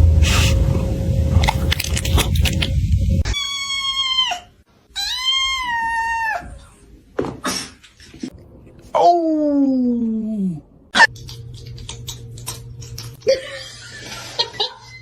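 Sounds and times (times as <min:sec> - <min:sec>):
low rumbling noise: 0:00.0 - 0:03.3.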